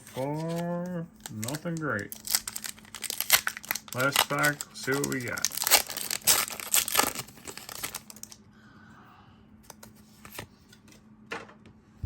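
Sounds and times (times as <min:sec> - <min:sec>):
foil wrapper crinkling: 0:00.0 - 0:08.4.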